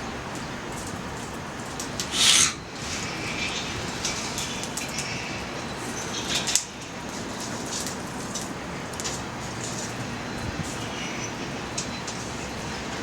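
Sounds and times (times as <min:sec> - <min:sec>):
fire hissing: 0:01.9 - 0:04.0
hissing burst: 0:02.0 - 0:02.7
wood fire crackling: 0:06.4 - 0:10.0.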